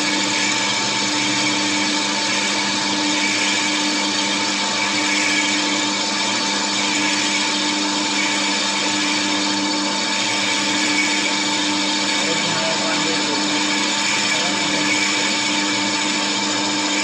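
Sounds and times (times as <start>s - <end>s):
lathe running: 0.0s - 17.0s.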